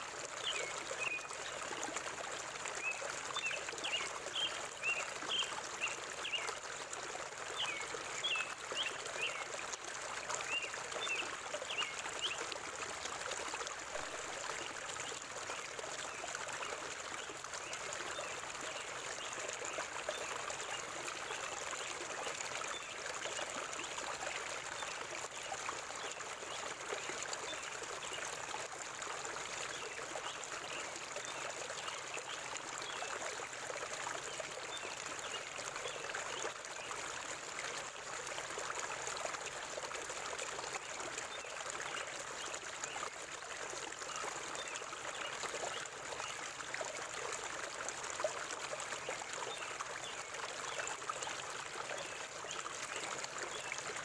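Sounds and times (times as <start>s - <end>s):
river water babbling over stones: 0.0s - 54.0s.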